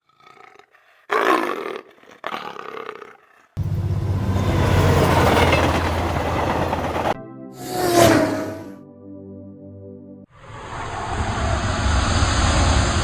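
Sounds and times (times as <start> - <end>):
animal growls: 0.0 - 3.6.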